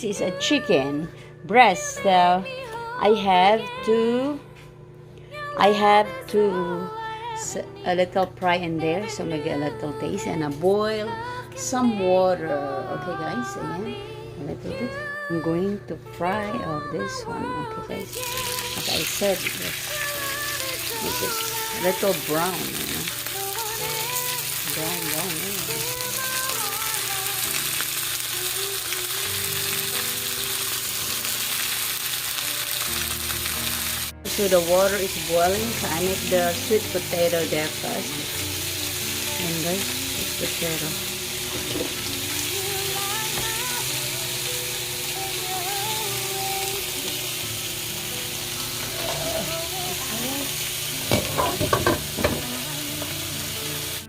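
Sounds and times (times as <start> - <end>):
food sizzling in a pan: 18.1 - 54.0.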